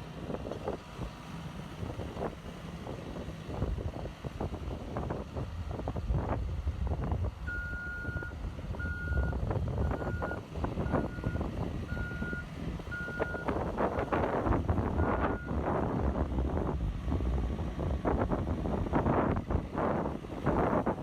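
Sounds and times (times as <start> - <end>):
diesel engine running: 0.0 - 21.0
reverse alarm beeping: 7.5 - 13.5.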